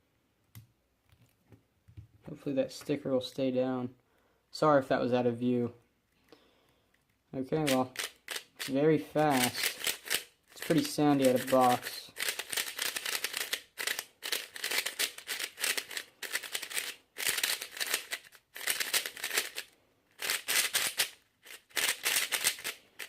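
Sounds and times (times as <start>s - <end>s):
plastic puzzle cube clicking: 7.7s - 23.0s.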